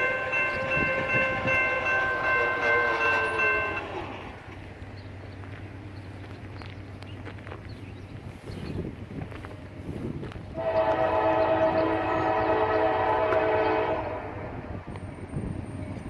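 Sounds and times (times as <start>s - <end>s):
locomotive rumble: 0.0s - 16.0s
locomotive air horn blast: 10.5s - 14.8s.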